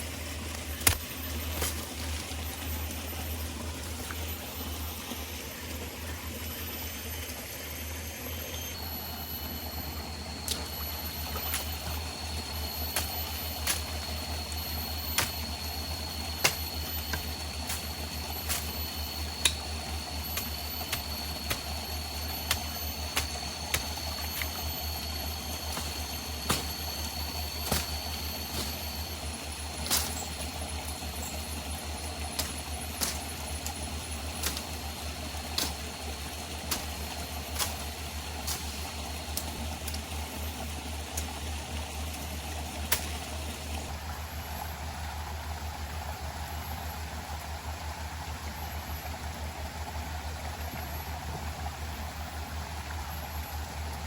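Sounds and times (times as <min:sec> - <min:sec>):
stream running: 0:00.0 - 0:54.0
high insect drone: 0:06.5 - 0:39.6.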